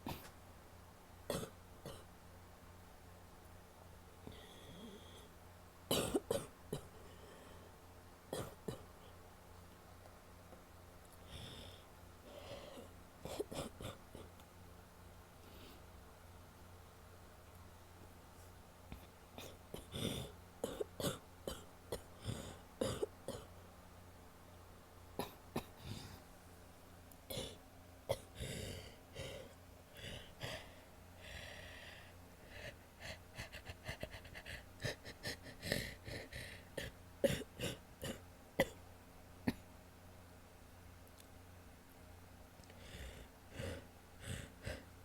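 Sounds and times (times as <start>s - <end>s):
woman coughing: 1.3s - 2.1s, 5.9s - 6.6s, 19.9s - 23.5s.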